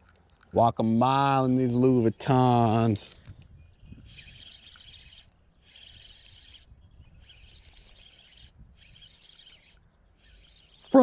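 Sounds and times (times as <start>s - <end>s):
high-pitched buzzy trills: 3.9s - 11.0s.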